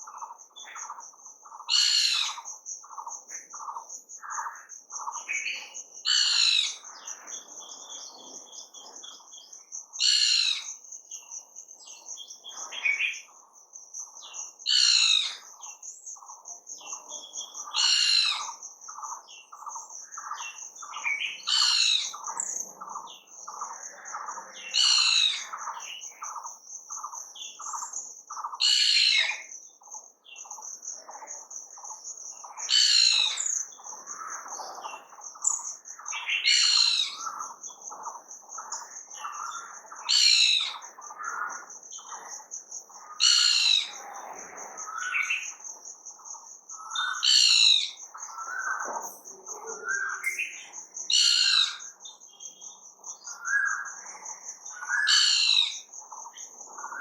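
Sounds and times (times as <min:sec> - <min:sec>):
bird song phrase: 0:14.0 - 0:42.5, 0:43.2 - 0:57.0
high bird trill: 0:44.9 - 0:57.0.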